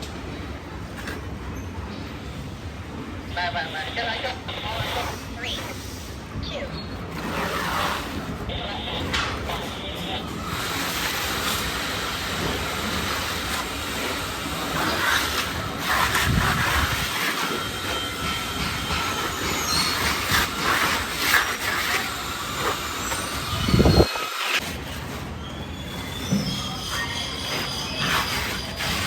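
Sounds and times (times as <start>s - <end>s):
trowel scraping plaster: 6.9s - 29.0s.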